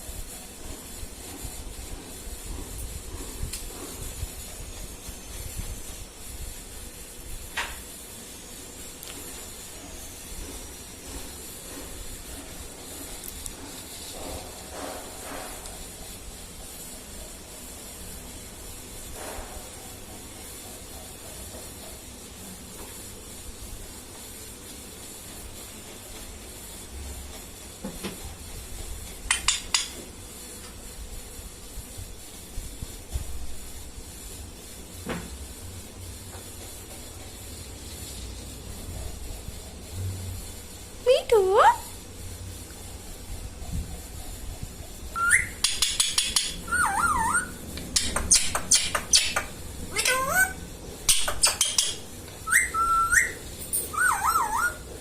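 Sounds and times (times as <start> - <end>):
steady hiss: 0.0 - 54.0
parrot high calls: 45.2 - 45.7, 46.6 - 47.6, 48.3 - 54.8.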